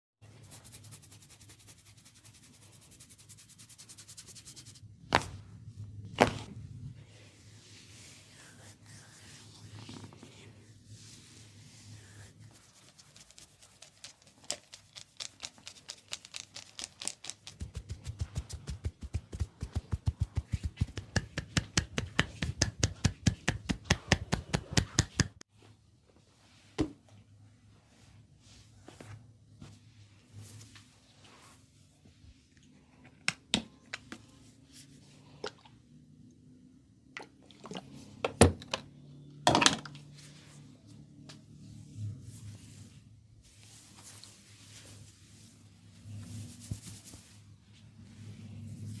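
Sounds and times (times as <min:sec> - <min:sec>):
hands massaging oiled hair: 0:00.3 - 0:04.8, 0:07.4 - 0:25.1, 0:43.6 - 0:47.5
hands patting a head: 0:16.8 - 0:25.4
deep thumping strokes: 0:17.7 - 0:21.1.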